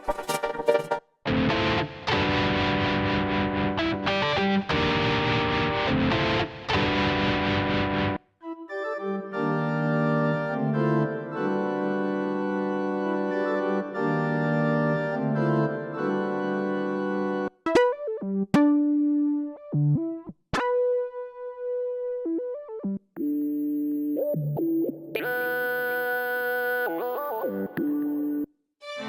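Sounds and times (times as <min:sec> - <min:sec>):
synthesizer organ chords: 0:00.0 - 0:03.6, 0:05.8 - 0:20.2
mellow keyboard chords: 0:00.0 - 0:28.4.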